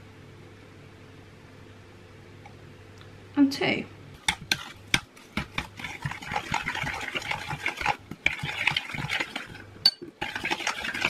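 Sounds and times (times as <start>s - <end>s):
utensil stirring batter in a bowl: 4.2s - 11.0s.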